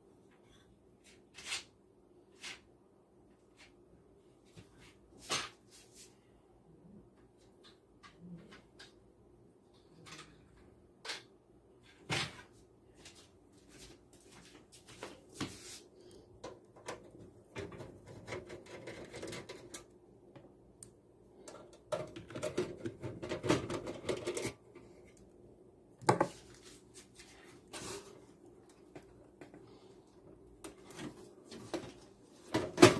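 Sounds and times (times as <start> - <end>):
computer parts clicking and scraping: 16.8 - 19.9.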